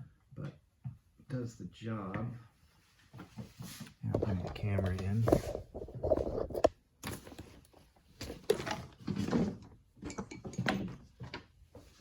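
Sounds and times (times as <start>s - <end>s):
camera handling knocks and rubbing: 4.1s - 6.7s.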